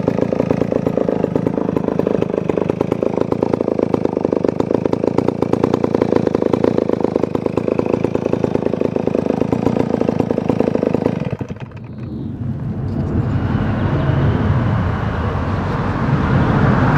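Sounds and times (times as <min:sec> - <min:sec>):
chainsaw engine running: 0:00.0 - 0:12.1
low engine rumble: 0:00.0 - 0:16.9.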